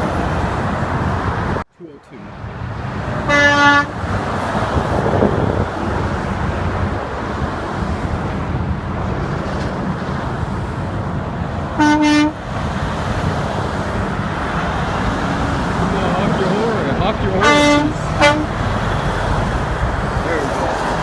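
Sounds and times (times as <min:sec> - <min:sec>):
road and wind noise: 0:00.0 - 0:21.0
car horn blast: 0:03.3 - 0:04.0, 0:11.8 - 0:12.4, 0:17.0 - 0:18.7.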